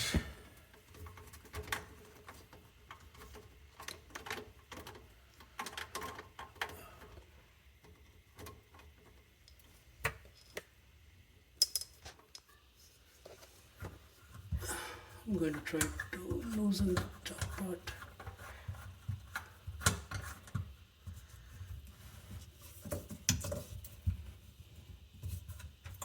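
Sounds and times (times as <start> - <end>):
plastic drain parts clicking and tapping: 0.7 - 10.7, 15.4 - 21.2.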